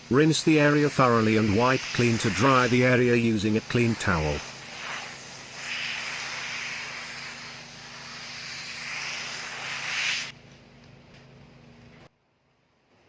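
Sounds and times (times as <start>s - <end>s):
water spraying onto car roof: 0.4s - 10.3s.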